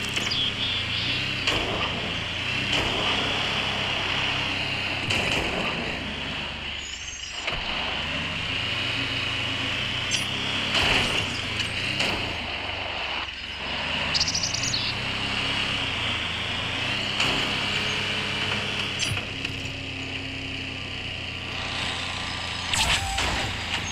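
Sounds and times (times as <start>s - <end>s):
bird chirping: 0.0s - 1.5s, 13.4s - 15.1s
engine running: 0.0s - 23.9s.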